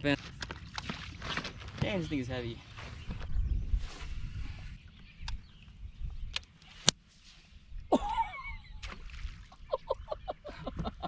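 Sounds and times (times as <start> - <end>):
low wind rumble: 0.0 - 11.0
people laughing: 7.9 - 8.8, 9.7 - 11.0.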